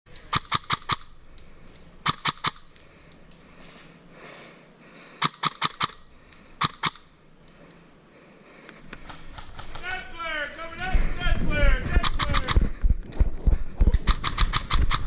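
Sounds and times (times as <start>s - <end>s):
airsoft gun rapid shots: 0.3s - 1.1s, 2.0s - 2.6s, 5.2s - 6.0s, 6.6s - 7.0s, 9.0s - 10.2s, 11.9s - 12.7s, 13.9s - 15.0s.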